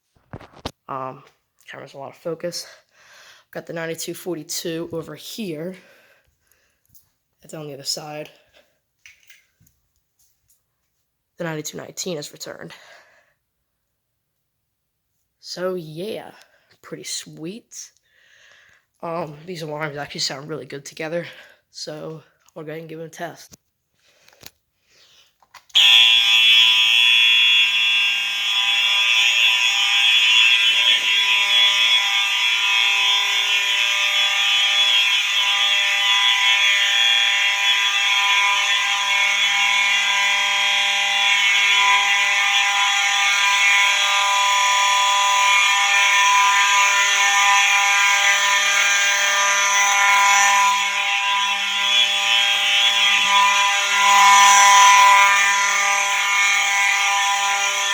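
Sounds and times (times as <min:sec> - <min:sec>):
fire alarms continuous tone: 0:00.0 - 0:14.2, 0:15.1 - 0:57.9.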